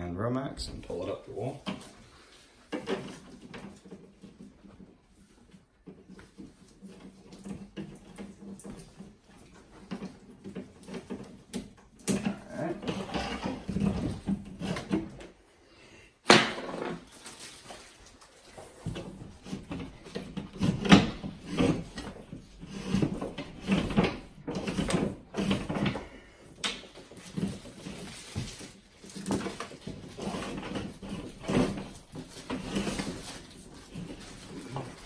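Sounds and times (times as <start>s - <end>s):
cable scraping inside a wall: 0.8s - 15.8s, 16.8s - 35.0s.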